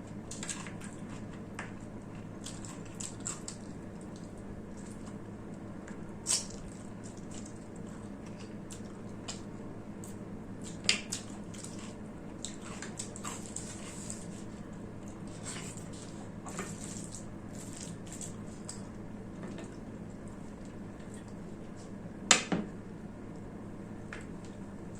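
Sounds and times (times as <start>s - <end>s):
wet chewing and smacking: 0.0s - 19.0s
steady low hum: 0.0s - 24.9s.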